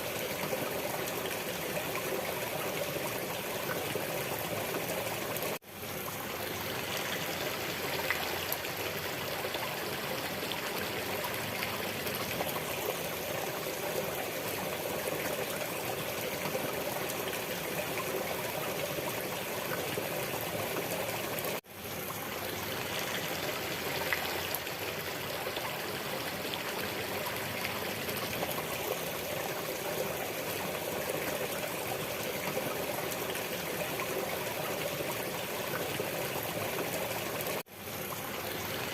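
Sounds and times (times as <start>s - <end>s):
water trickling: 0.0s - 38.9s.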